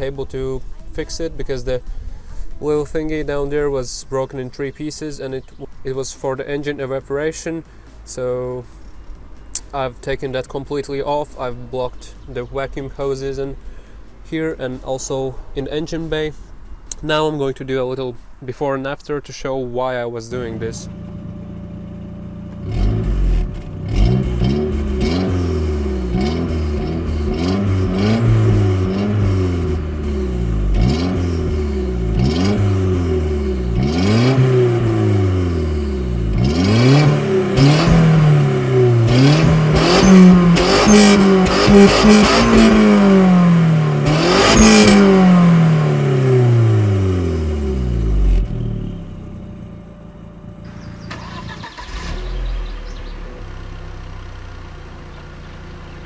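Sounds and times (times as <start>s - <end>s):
car engine revving: 20.3s - 54.6s.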